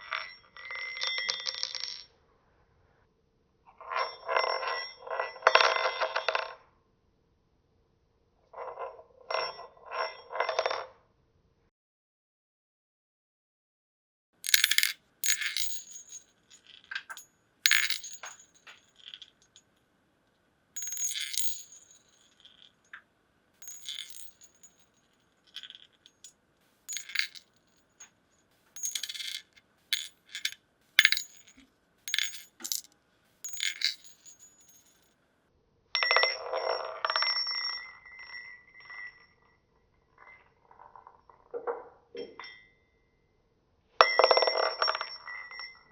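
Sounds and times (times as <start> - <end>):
metal rings clinking on hard surface: 0.0 - 2.1, 3.9 - 6.6, 14.4 - 19.8, 20.8 - 23.0, 23.6 - 35.1, 36.0 - 39.6, 44.0 - 45.9
ring spinning on its edge: 23.6 - 24.9, 25.5 - 27.6, 28.6 - 34.5.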